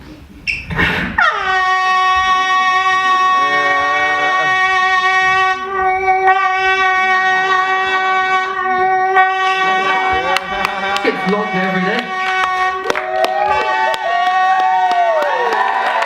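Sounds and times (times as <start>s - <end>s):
beatboxer holding horn-like note: 1.2s - 13.0s.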